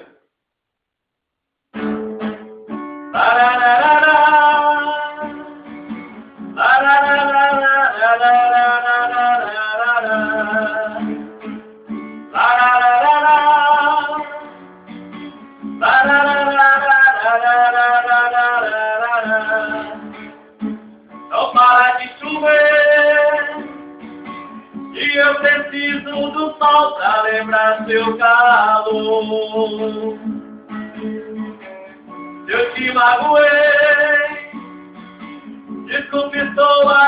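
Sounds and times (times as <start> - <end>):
guitar melody: 1.7 - 37.0.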